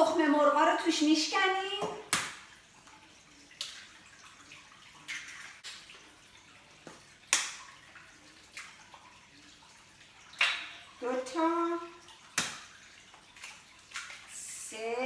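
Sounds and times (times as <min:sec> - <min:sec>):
egg cracking taps: 0:01.8 - 0:02.5, 0:06.8 - 0:07.7, 0:12.3 - 0:13.3.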